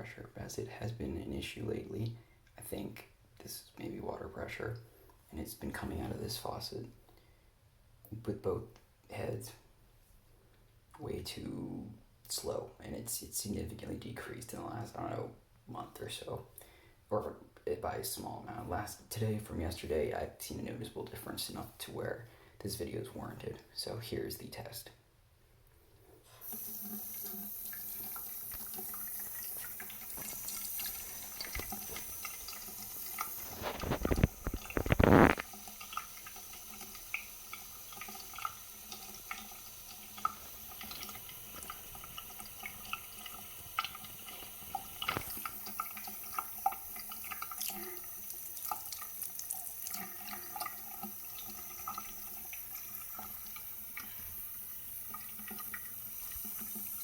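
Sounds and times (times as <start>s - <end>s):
faucet stream into sink: 26.4s - 57.0s.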